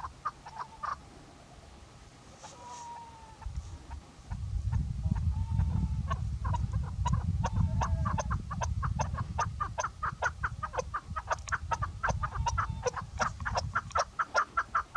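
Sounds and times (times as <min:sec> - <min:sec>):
partridge clucking calls: 0:00.0 - 0:01.0, 0:02.4 - 0:14.9
low steady rumble: 0:03.0 - 0:14.2.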